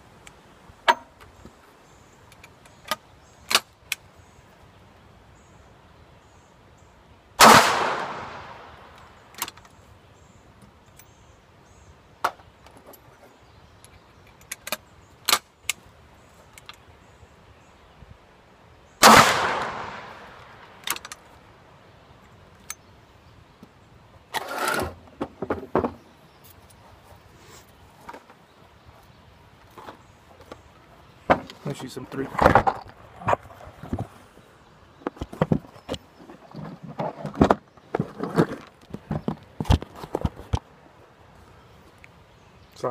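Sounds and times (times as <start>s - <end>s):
gunshots with echo: 7.4s - 8.7s, 19.0s - 20.4s.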